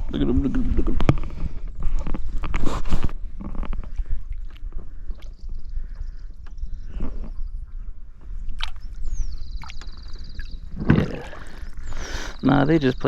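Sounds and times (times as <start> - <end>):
wind rumble on microphone: 0.0 - 13.0
knocks and rustles in a kayak: 0.4 - 5.0, 10.7 - 11.7.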